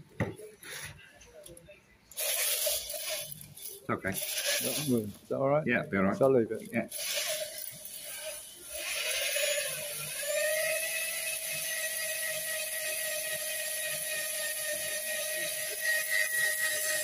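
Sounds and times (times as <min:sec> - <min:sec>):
electric drill whining: 0:02.2 - 0:05.1, 0:06.9 - 0:17.0.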